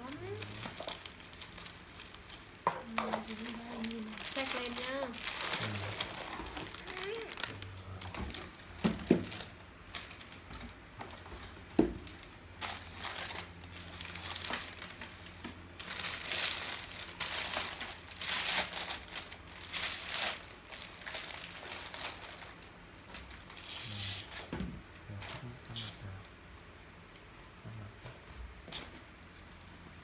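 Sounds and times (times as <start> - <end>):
plastic wrap crinkling: 0.0 - 24.5.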